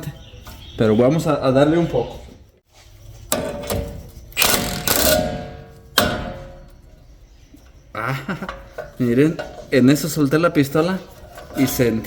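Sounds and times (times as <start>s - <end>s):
impact wrench bursts: 4.4s - 6.4s.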